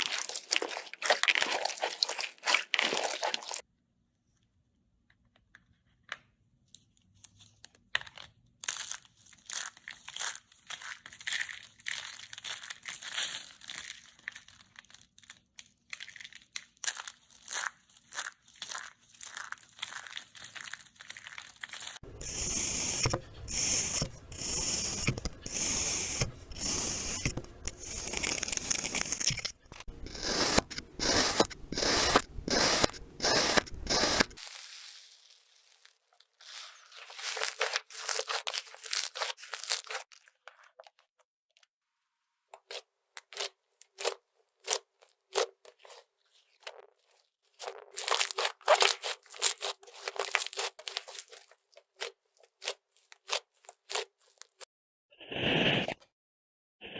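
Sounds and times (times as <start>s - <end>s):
crisp crunching cutting strokes: 0.0s - 3.6s, 20.6s - 40.1s, 47.0s - 54.6s.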